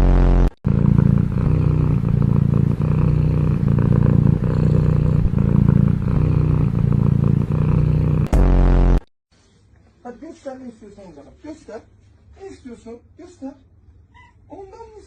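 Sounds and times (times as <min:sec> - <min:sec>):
cat purring: 0:00.7 - 0:08.3.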